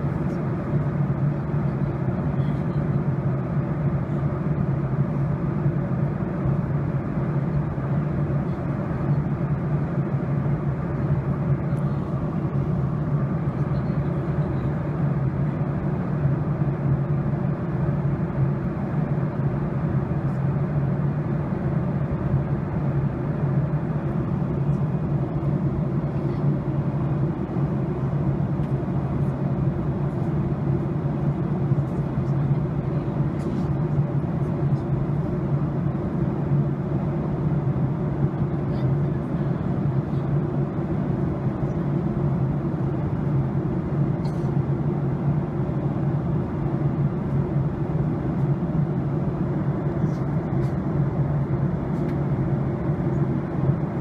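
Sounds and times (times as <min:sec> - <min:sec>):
constant low hum: 0:00.0 - 0:54.0
jet engine and airflow rush: 0:00.0 - 0:54.0.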